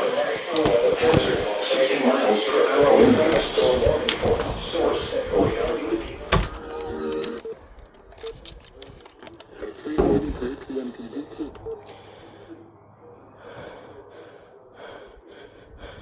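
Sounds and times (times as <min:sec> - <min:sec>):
scattered clicks: 0:00.0 - 0:12.0
wordless vocal sound: 0:00.0 - 0:16.0.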